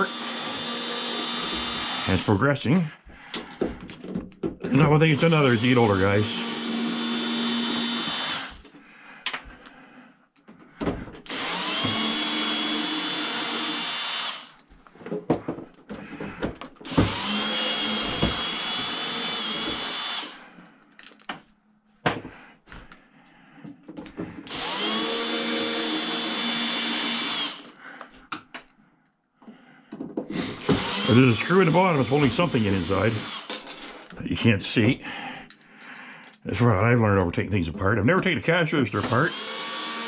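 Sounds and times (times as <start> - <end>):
power drill whine: 0.0 - 2.4, 4.7 - 8.7, 10.9 - 14.7, 16.9 - 20.4, 24.4 - 27.8, 30.4 - 34.1, 38.9 - 40.0
metal parts clicking and knocking: 20.8 - 21.5, 33.3 - 34.2.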